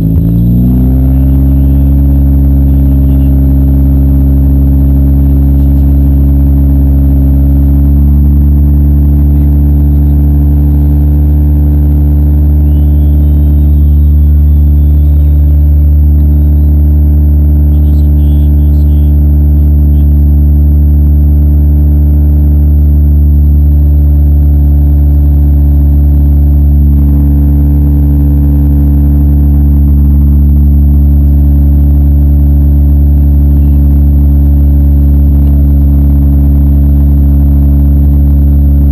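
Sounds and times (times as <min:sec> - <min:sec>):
car engine running: 0:00.0 - 0:38.9.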